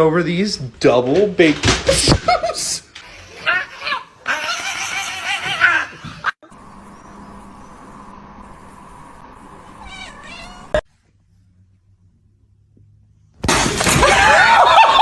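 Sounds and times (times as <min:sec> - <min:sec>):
cat meowing: 0:09.8 - 0:10.8.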